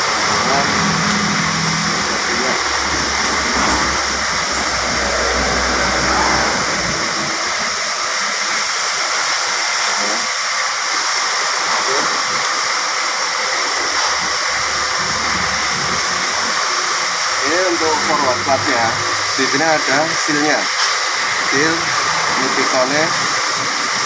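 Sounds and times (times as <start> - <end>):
faint low rumble: 0.0 - 7.7
steady hiss: 0.0 - 24.0.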